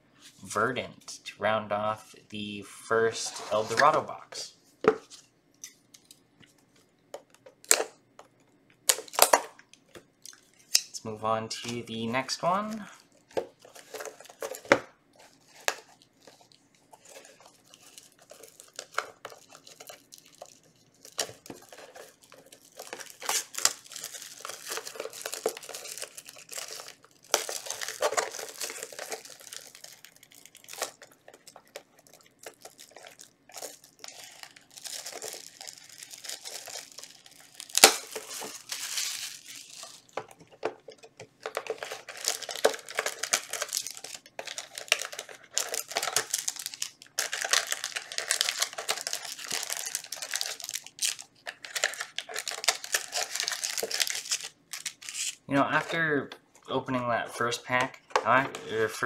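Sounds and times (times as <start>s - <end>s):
plastic packaging crinkling: 11.5s - 56.0s.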